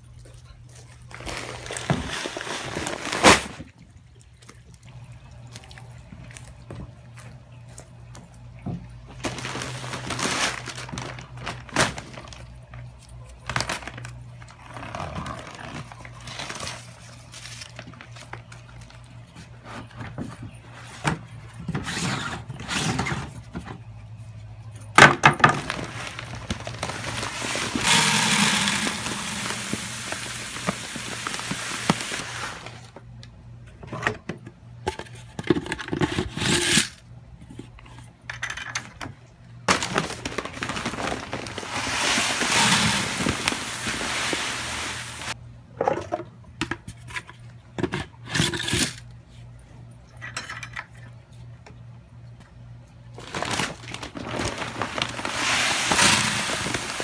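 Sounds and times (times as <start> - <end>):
objects clinking and scraping: 26.8 - 30.9.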